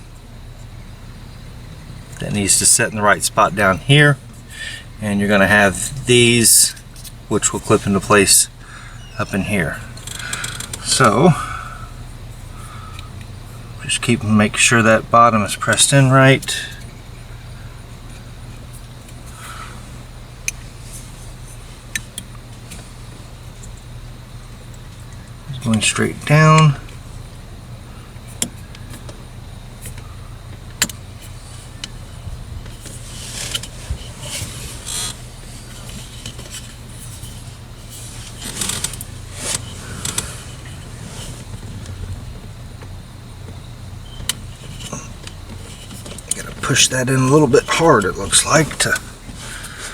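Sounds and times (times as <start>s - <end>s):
steady low hum: 0.0s - 49.9s
plastic scraping and clicking: 38.0s - 42.1s.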